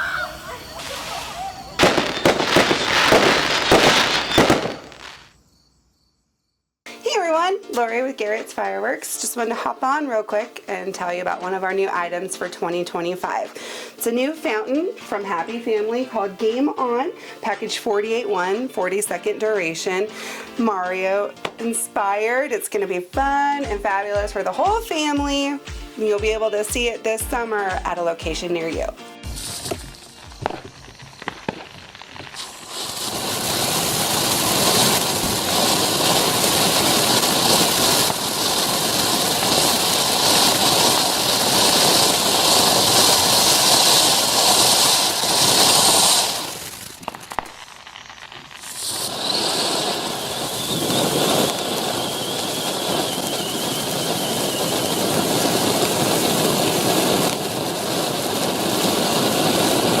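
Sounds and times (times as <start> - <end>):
firework fountain hissing: 0.0 - 5.3, 29.2 - 60.0.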